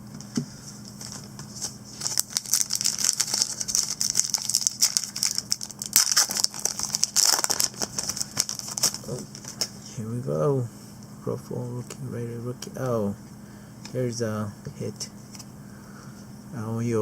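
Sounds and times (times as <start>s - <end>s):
foil wrapper crinkling and tearing: 1.9s - 9.7s.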